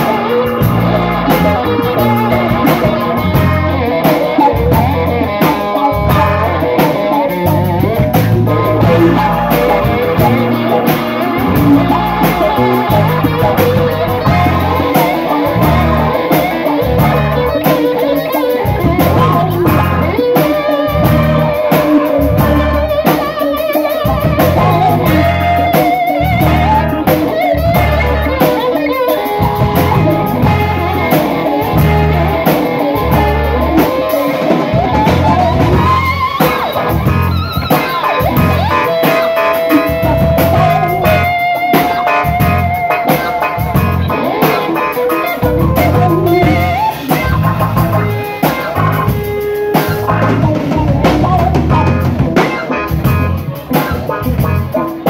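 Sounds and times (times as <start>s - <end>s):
electric guitar lead: 0.0s - 55.0s
rock band playing: 0.0s - 55.0s.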